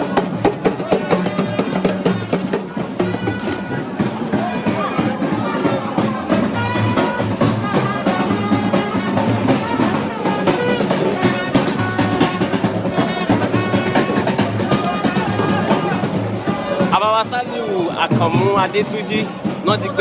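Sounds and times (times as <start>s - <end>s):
music with busy drums: 0.0s - 20.0s.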